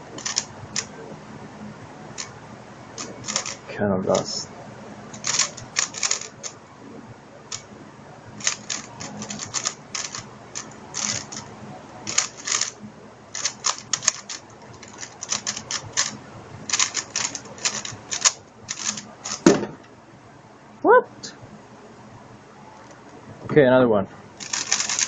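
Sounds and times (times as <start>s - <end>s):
plastic puzzle cube clicking: 0.2s - 0.9s, 5.2s - 6.4s, 8.4s - 11.5s, 12.1s - 12.7s, 13.4s - 16.1s, 16.7s - 19.5s, 24.4s - 25.0s.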